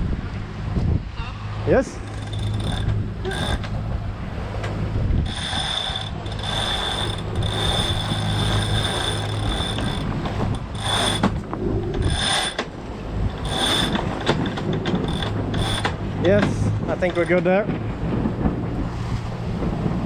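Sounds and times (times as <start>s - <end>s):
winch ratcheting: 1.9s - 3.9s, 4.6s - 17.7s.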